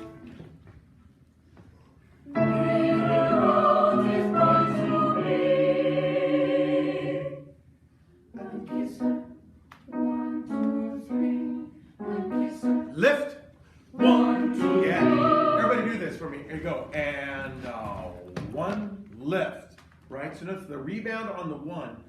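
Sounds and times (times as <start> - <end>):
choir singing: 2.3 - 7.6, 8.3 - 12.9, 13.9 - 16.4.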